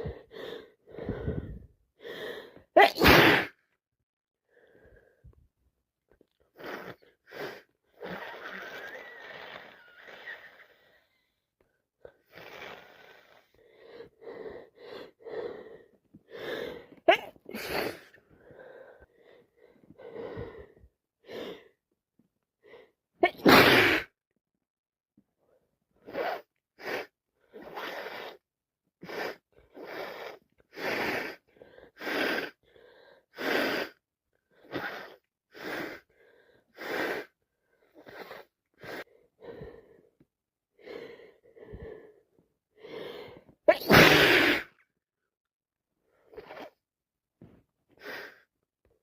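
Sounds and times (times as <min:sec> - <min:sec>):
short breathy sounds: 0:00.0 - 0:02.9
person sneezing: 0:02.8 - 0:03.6, 0:17.1 - 0:18.1, 0:23.2 - 0:24.1, 0:43.7 - 0:44.8.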